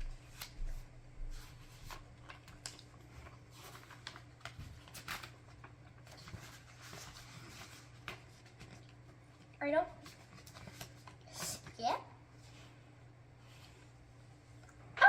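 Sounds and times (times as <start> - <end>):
paper pages rustling: 0.2 - 11.7.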